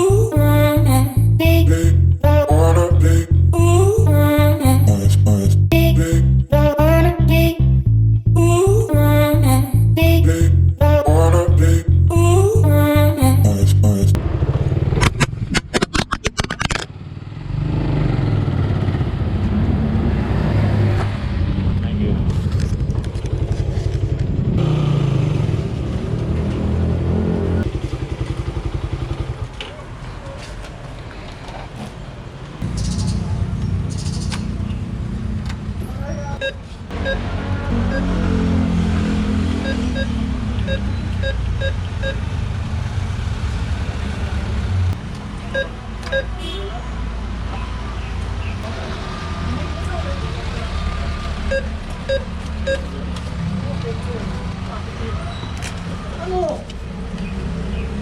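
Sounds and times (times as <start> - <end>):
pitched hum: 0.0 - 14.2
vehicle engine rumbling: 0.0 - 58.0
sharp clicks: 15.0 - 16.9, 32.6 - 34.5
short high beeps: 51.5 - 52.9.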